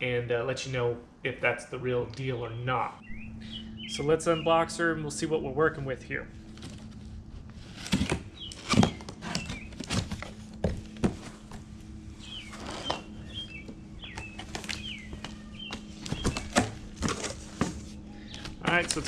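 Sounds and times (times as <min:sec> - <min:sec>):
birds chirping: 0:01.3 - 0:06.9, 0:08.2 - 0:19.0
packaging knocks and rustling: 0:14.4 - 0:19.0.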